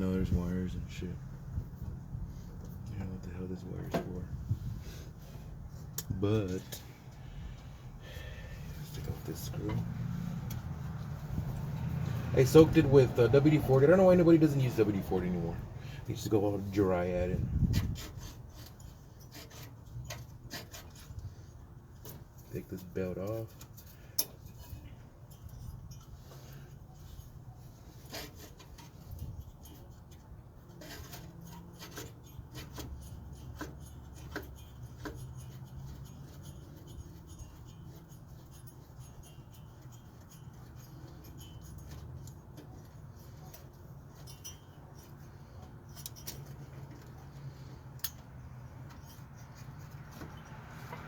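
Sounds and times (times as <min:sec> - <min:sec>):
hand tools clicking on metal: 0:22.0 - 0:51.0.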